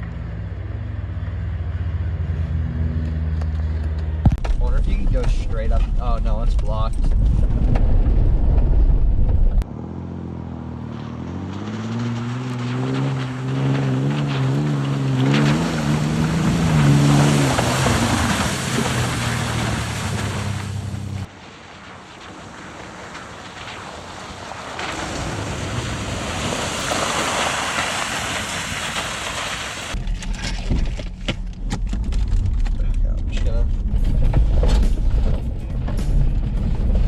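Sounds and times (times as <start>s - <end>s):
loud low rumble: 0.0s - 9.7s, 30.0s - 37.0s
tyres churning in snow: 0.0s - 37.0s
engine revving hard: 9.8s - 21.3s.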